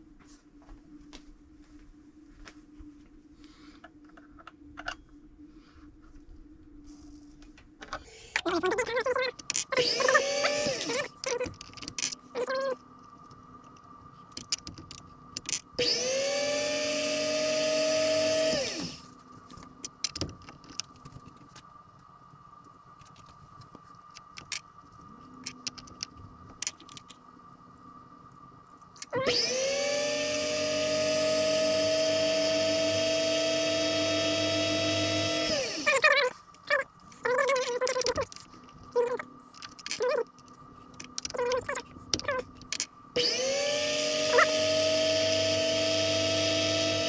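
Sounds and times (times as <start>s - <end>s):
small electric motor spinning: 9.1s - 12.8s, 15.8s - 19.1s, 29.0s - 36.4s, 43.2s - 47.0s.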